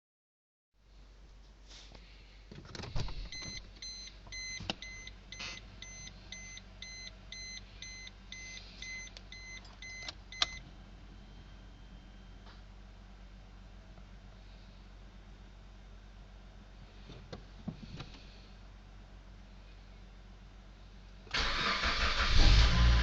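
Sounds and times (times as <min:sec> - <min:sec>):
car warning chime beeping: 0:03.3 - 0:10.7.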